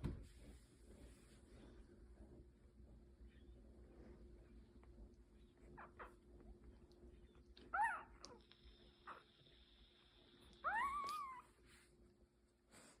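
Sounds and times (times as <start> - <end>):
newborn puppy crying: 5.8 - 6.2, 7.6 - 9.4, 10.5 - 11.6.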